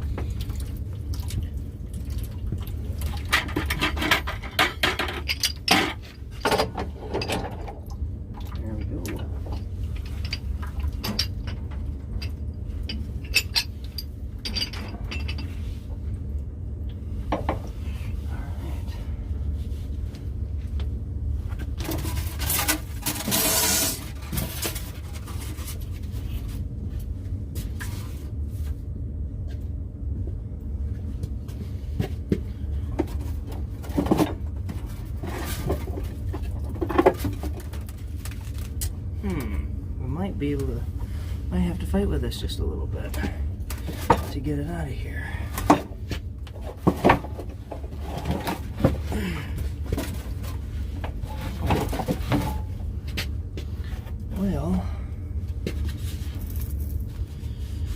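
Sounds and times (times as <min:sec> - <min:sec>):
low hum: 0:00.0 - 0:57.9
metal tools clinking and knocking: 0:03.4 - 0:07.7, 0:10.0 - 0:15.6.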